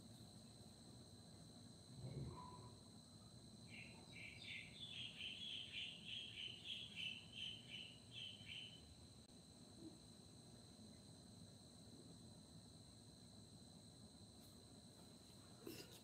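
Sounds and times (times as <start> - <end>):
bird chirping: 3.7 - 8.9.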